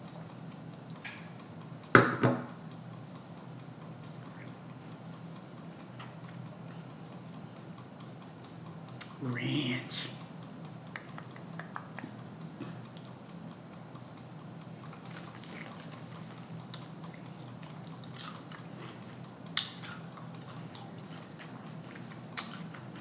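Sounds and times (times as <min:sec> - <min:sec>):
low steady hum: 0:00.0 - 0:23.0
biting and chewing food: 0:14.8 - 0:23.0.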